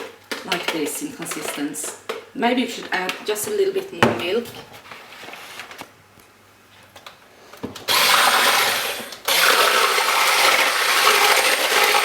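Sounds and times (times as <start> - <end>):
electric hand mixer whisking batter: 7.9 - 12.0.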